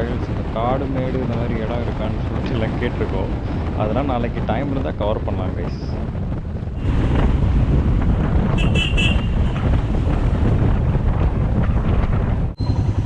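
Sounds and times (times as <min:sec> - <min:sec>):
motorcycle riding: 0:00.0 - 0:13.0
wind buffeting microphone: 0:00.0 - 0:13.0
vehicle horn beeps: 0:08.6 - 0:09.4.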